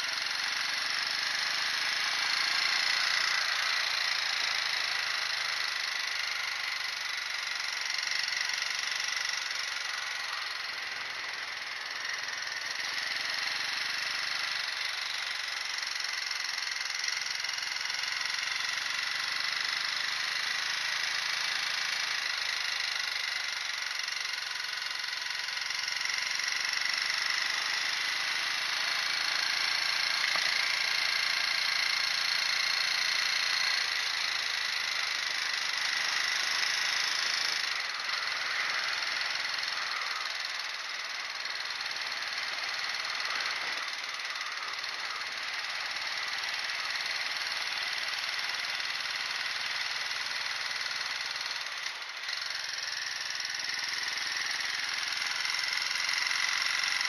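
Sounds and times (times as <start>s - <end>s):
motorcycle engine drone: 0.0s - 57.0s.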